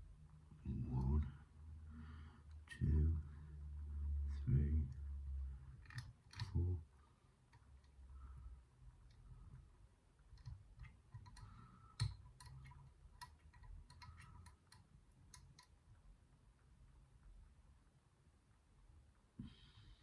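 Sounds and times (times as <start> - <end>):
lock pick clicking: 5.8 - 6.6, 10.4 - 15.7
pick scraping in lock: 5.8 - 6.6, 10.3 - 15.7.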